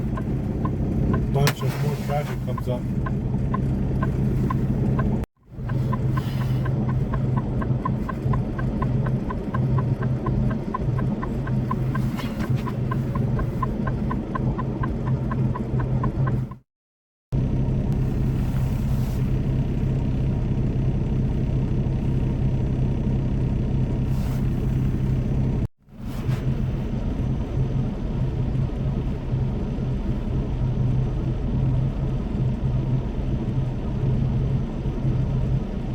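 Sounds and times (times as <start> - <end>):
truck engine rumble: 0.0 - 16.7, 17.3 - 35.9
quick even ticking: 2.6 - 16.6.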